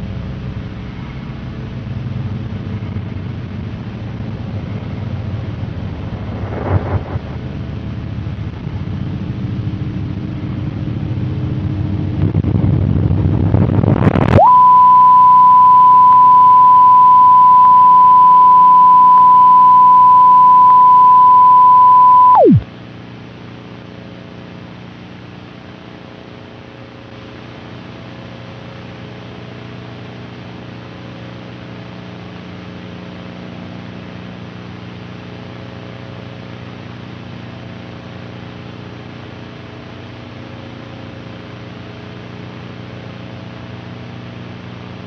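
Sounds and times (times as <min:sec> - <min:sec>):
low noisy drone: 0:00.0 - 0:22.6.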